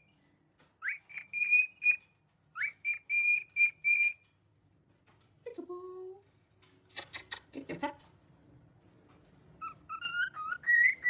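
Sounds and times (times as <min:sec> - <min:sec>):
parrot whistling a tune: 0:00.8 - 0:02.0, 0:02.6 - 0:04.2, 0:09.6 - 0:11.0.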